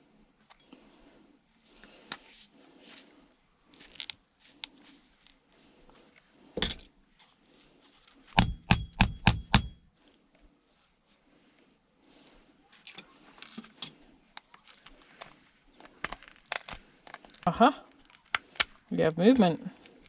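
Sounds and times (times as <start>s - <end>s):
sharp knock on workbench: 8.4s - 9.8s
ringing metallic strikes: 8.4s - 9.9s.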